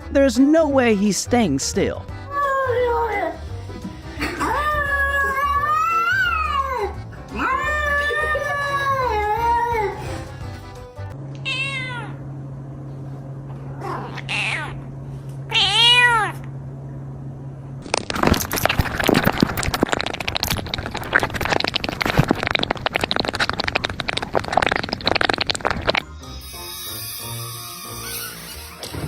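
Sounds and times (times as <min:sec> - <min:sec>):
low steady hum: 0:06.7 - 0:26.2
cat meowing: 0:11.4 - 0:12.2, 0:13.8 - 0:14.8, 0:15.5 - 0:16.4
loud crackling and rustling: 0:17.8 - 0:26.0.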